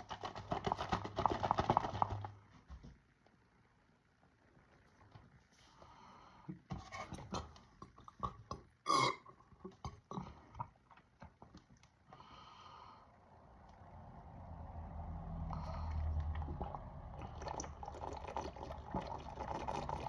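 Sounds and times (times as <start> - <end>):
soda gulped from plastic bottle: 15.5 - 20.0.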